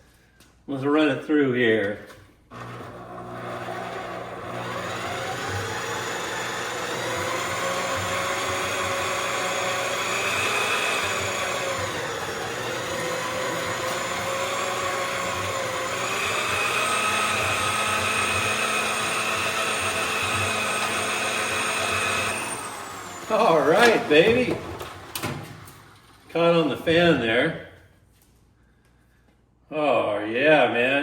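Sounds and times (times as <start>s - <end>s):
motorized wire stripper whining: 2.5s - 26.3s.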